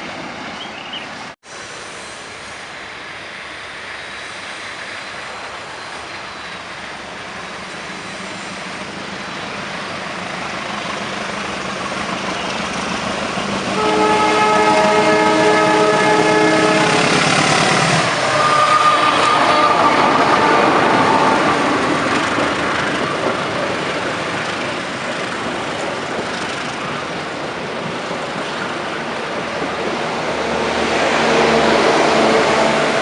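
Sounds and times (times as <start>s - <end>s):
train rumble: 0.0s - 33.0s
locomotive horn blast: 13.7s - 21.6s.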